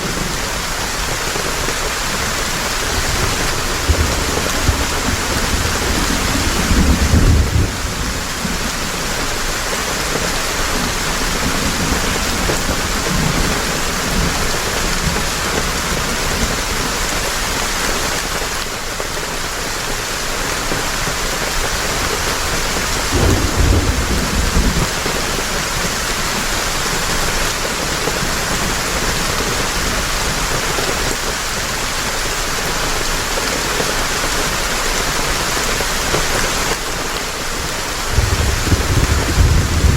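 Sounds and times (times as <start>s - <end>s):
heavy rain: 0.0s - 39.9s
low thunder rumbles: 2.1s - 9.4s, 23.0s - 27.4s, 38.0s - 39.9s.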